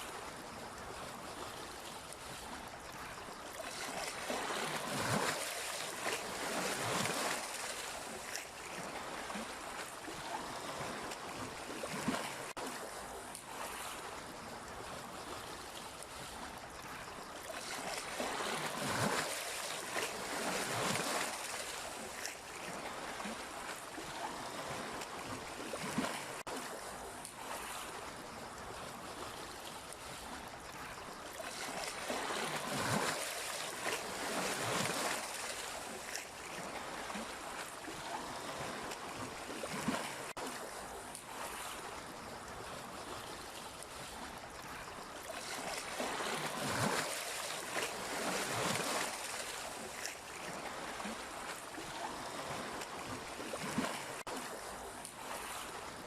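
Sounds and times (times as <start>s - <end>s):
sea waves washing in: 0.0s - 56.0s.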